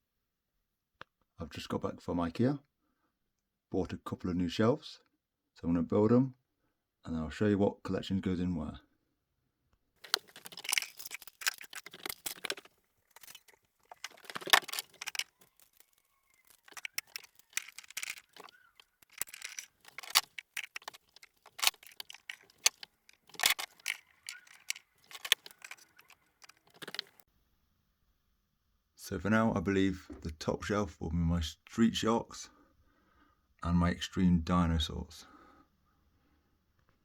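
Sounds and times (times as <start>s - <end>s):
metal fittings clicking and rattling: 10.0s - 27.2s.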